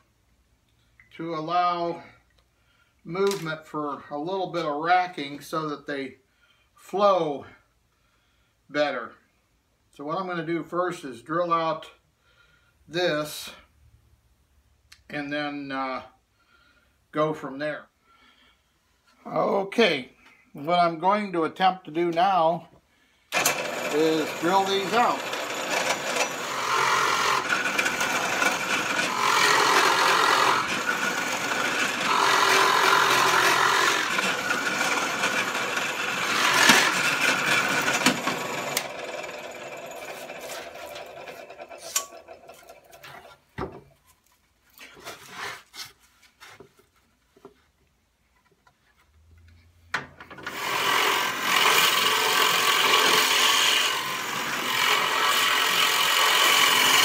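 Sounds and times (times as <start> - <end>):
power drill boring into wood: 23.3 - 42.6, 50.4 - 57.0.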